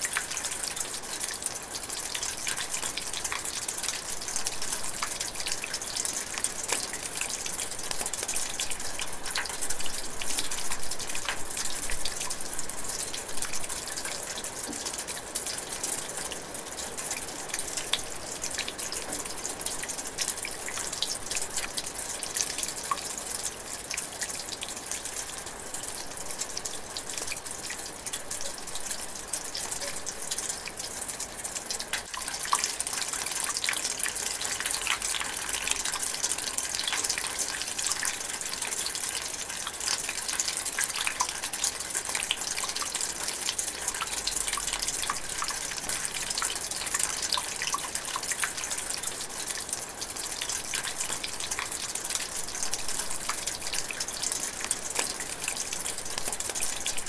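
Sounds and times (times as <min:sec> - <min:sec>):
rain drizzling in forest: 0:00.0 - 0:57.0
raindrops landing close by: 0:02.0 - 0:38.7, 0:39.4 - 0:57.0.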